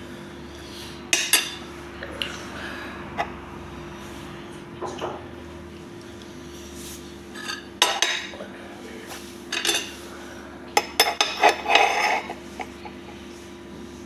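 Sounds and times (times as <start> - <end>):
steady low hum: 0.0 - 14.0
cutlery clinking against dishes: 7.4 - 8.4, 9.5 - 10.0, 10.8 - 12.4.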